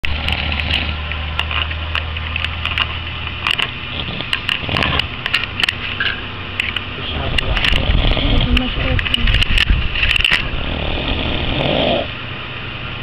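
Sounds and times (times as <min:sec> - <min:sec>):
low rasping snore: 0:00.0 - 0:01.0, 0:03.9 - 0:05.1, 0:07.7 - 0:08.6, 0:10.6 - 0:12.1
small clicks and crackles: 0:00.1 - 0:05.8, 0:08.5 - 0:10.5.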